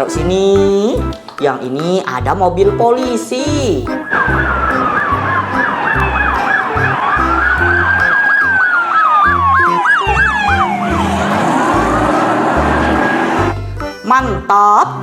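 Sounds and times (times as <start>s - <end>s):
police siren yelp and wail: 4.0s - 13.5s
background music with bass beat: 9.2s - 14.1s.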